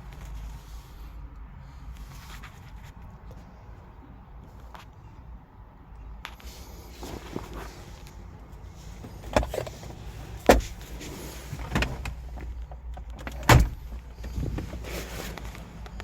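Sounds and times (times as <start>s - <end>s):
car doors clunking shut: 9.0s - 14.8s.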